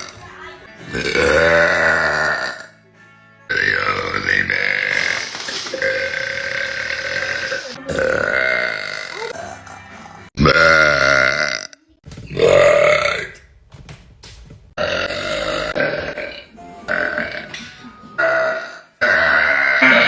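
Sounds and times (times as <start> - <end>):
woman burping loudly: 0.8 - 2.8, 3.5 - 9.4, 10.4 - 13.4, 14.8 - 20.0.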